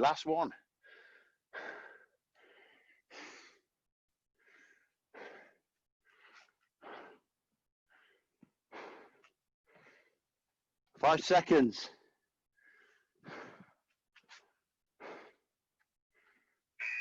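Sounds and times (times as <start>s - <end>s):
person breathing hard and fast: 0.8s - 3.8s, 4.4s - 10.4s, 12.5s - 16.7s.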